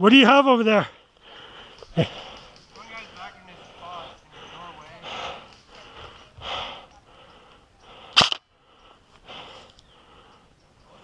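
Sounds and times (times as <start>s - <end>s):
breathy rustling: 0.8s - 11.0s
airsoft gun shot: 8.2s - 8.4s.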